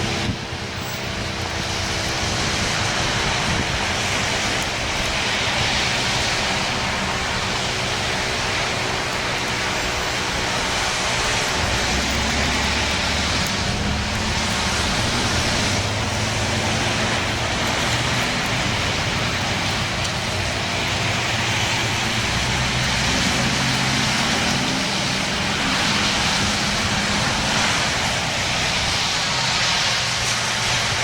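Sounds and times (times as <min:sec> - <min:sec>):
rotating siren roar: 0:00.0 - 0:31.0.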